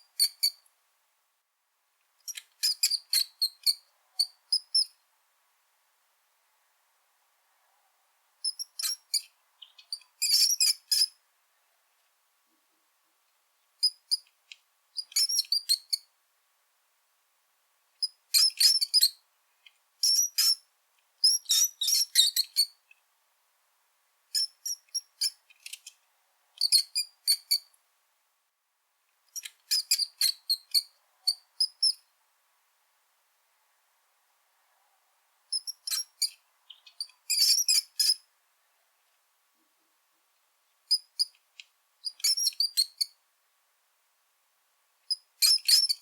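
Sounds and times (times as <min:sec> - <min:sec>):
rat squeaking: 0:02.3 - 0:04.9, 0:08.4 - 0:11.2, 0:15.0 - 0:16.0, 0:18.0 - 0:19.1, 0:20.0 - 0:20.6, 0:21.2 - 0:22.8, 0:29.4 - 0:32.0, 0:35.5 - 0:38.2, 0:42.0 - 0:43.1, 0:45.1 - 0:46.0.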